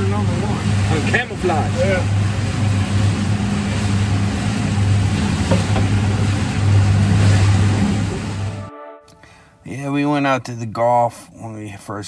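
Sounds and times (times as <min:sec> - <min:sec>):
boat engine running: 0:00.0 - 0:08.7
wind and water rushing: 0:00.0 - 0:08.7.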